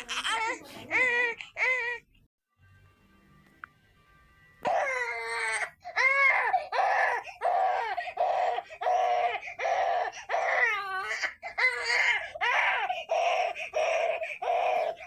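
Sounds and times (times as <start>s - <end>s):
baby crying in short wails: 4.6s - 15.0s.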